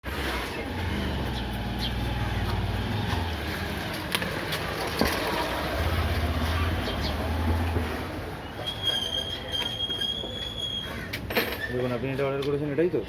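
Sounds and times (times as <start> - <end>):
traffic noise: 0.0 - 13.0
low engine hum: 0.2 - 8.5.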